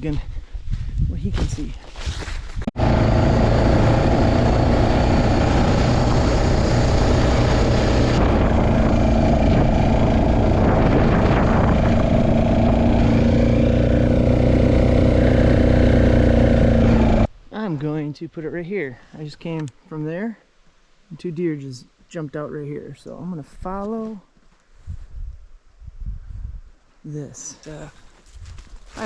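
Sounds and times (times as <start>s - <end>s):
off-road vehicle engine running: 2.8s - 17.3s.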